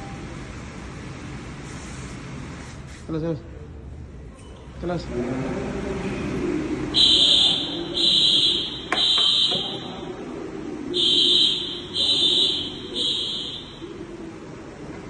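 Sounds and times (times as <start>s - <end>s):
fire alarm pulsing tone: 6.9s - 10.2s, 10.9s - 14.3s.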